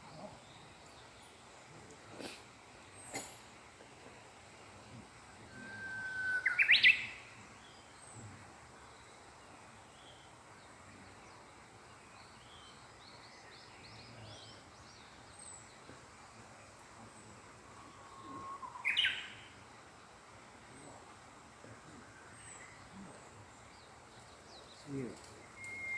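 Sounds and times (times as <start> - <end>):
small birds twittering: 0.0 - 25.9
bird whistling song: 5.5 - 7.8, 17.8 - 19.6, 25.4 - 25.9.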